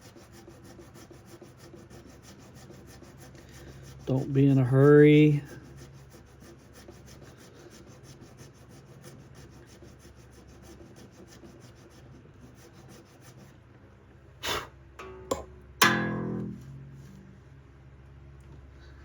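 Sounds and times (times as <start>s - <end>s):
file rasping: 0.0s - 13.6s
guitar string plucked: 15.0s - 17.2s.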